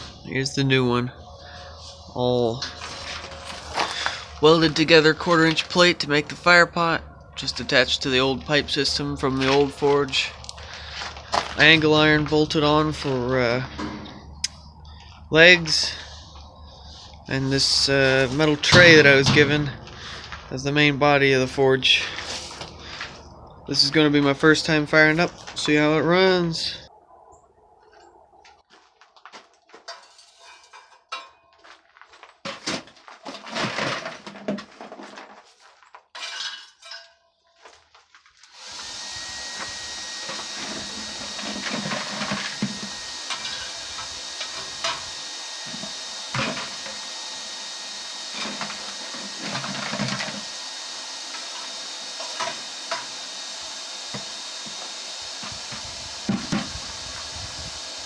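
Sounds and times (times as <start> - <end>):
forge blower hissing: 16.9 - 21.4, 38.6 - 58.0.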